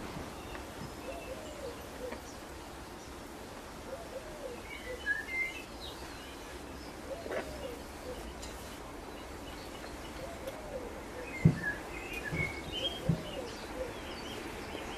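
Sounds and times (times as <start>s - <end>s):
pigeon cooing: 1.0s - 2.3s, 3.9s - 5.1s, 7.0s - 8.3s, 10.2s - 11.8s, 12.4s - 14.1s.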